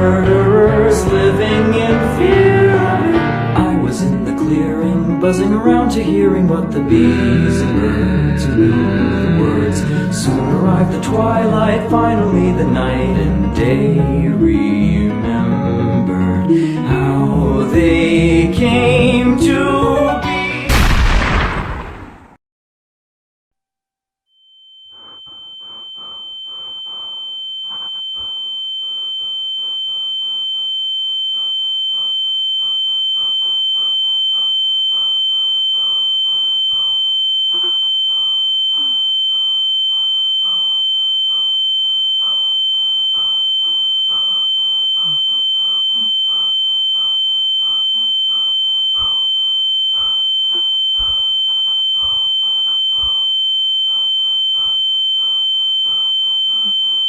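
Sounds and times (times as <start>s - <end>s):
high-pitched ringing tone: 24.4s - 57.0s.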